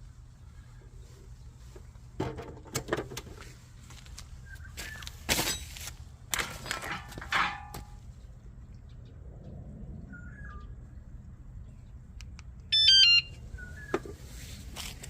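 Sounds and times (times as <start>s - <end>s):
sharp metallic knocks and clanks: 5.3s - 8.0s.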